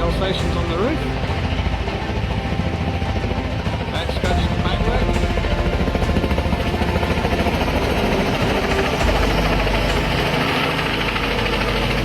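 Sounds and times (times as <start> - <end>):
throbbing mechanical drone: 0.0 - 12.0.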